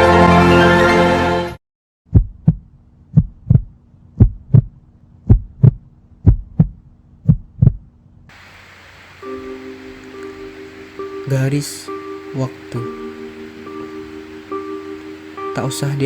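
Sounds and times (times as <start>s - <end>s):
heartbeat double thumps: 2.1s - 7.9s
steady hum: 7.4s - 16.0s
high tone beeping: 9.2s - 16.0s.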